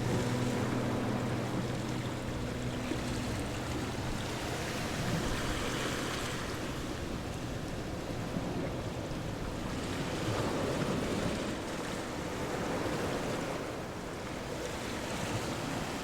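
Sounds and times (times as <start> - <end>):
low hum: 0.0 - 7.4
stream water rushing: 0.0 - 16.0.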